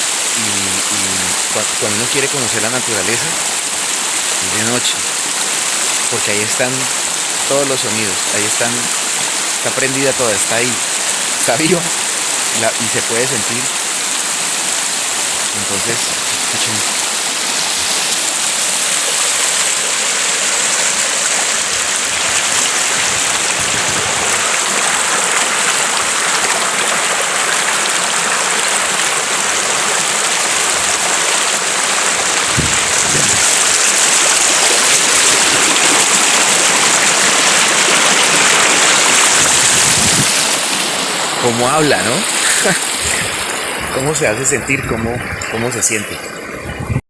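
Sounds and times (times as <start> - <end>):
river water rushing: 0.0 - 47.0.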